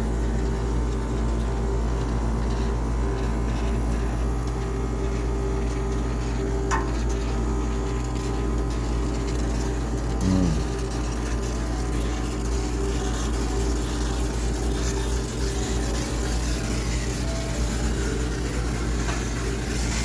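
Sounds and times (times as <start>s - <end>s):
steam cleaner running: 2.8s - 20.0s.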